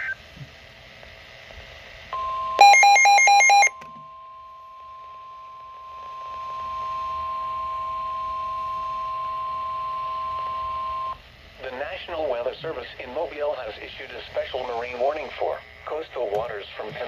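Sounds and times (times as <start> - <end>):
alternating electronic beeps: 2.2 - 3.7
high warning tone: 2.2 - 11.1.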